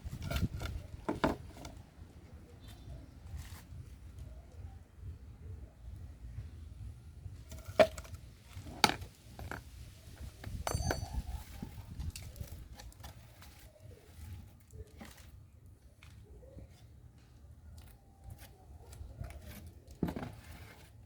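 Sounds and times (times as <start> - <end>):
clatter with metallic ring: 10.5 - 11.5.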